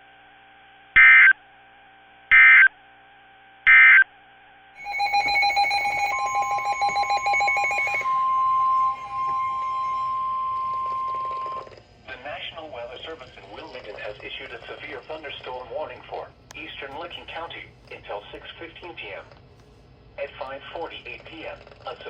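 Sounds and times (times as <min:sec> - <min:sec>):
steady alert tone: 0:04.8 - 0:11.7
rapid pulsing beep: 0:04.8 - 0:11.8.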